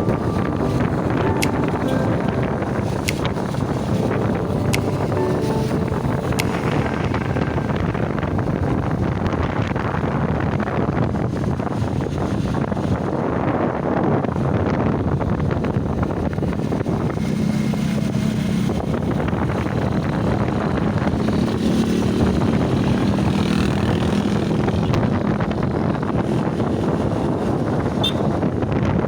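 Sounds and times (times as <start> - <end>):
wind and road noise: 5.8 - 29.0.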